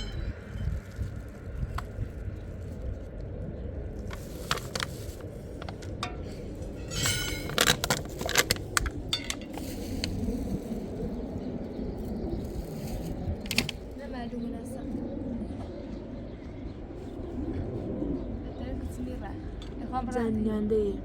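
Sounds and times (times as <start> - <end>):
kitchenware clinking and knocking: 6.8 - 8.5.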